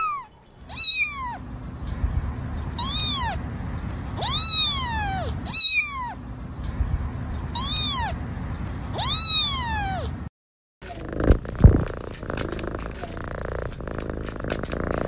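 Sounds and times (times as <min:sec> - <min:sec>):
kitten meowing: 0:00.0 - 0:01.4, 0:02.8 - 0:03.4, 0:04.2 - 0:06.2, 0:07.5 - 0:08.2, 0:09.0 - 0:10.1
low steady background rumble: 0:00.0 - 0:15.0.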